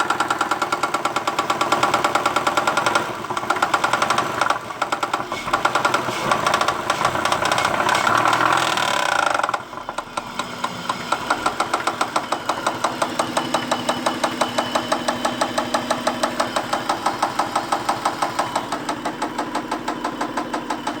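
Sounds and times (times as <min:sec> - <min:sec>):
car engine ticking: 0:00.0 - 0:21.0.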